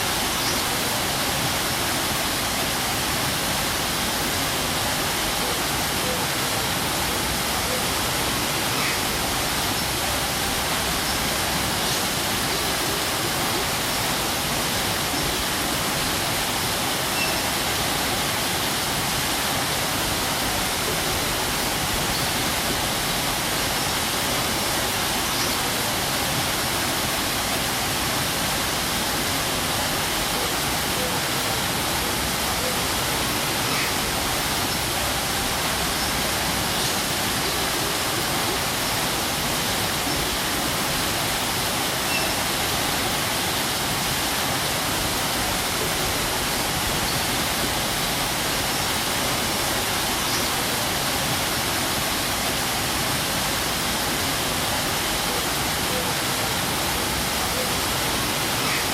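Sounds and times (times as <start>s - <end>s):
waterfall splashing: 0.0s - 58.9s.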